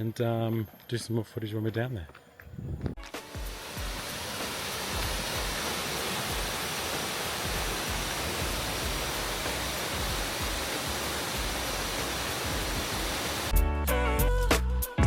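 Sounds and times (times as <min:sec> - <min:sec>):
low rumbles: 0:02.4 - 0:03.6
waterfall roaring: 0:03.3 - 0:13.5.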